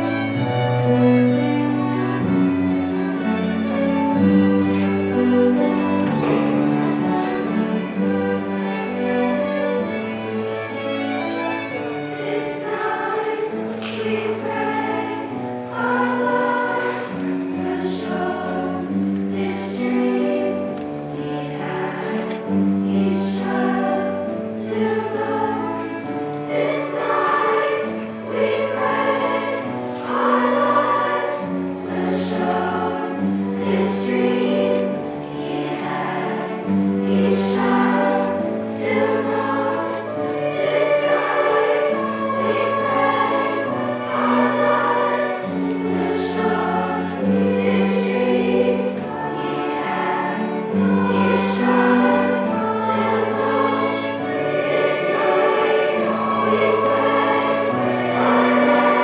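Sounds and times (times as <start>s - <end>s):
choir singing: 0.0s - 59.0s.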